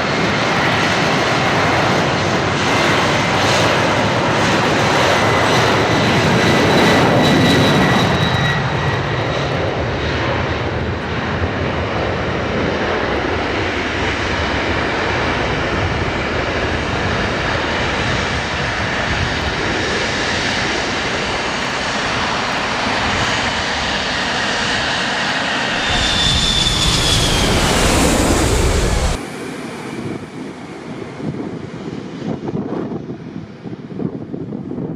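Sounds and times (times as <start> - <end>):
jet engines roaring: 0.0 - 34.6
high jet engine whine: 0.0 - 34.9.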